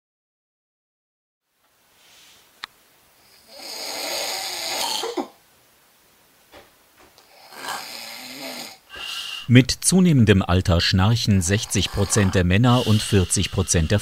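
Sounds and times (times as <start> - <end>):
person snoring: 3.2 - 5.2, 7.2 - 9.6, 11.2 - 14.0.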